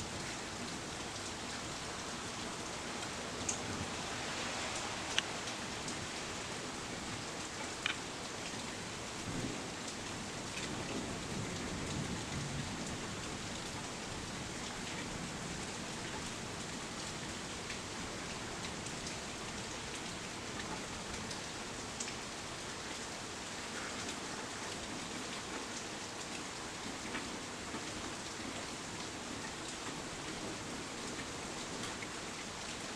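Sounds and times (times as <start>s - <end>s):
heavy rain pouring: 0.0s - 32.9s.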